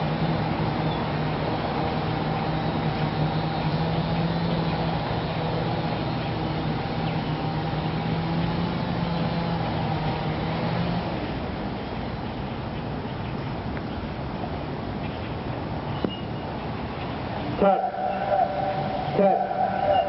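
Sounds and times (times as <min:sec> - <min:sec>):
tornado siren wail: 0:17.6 - 0:20.0.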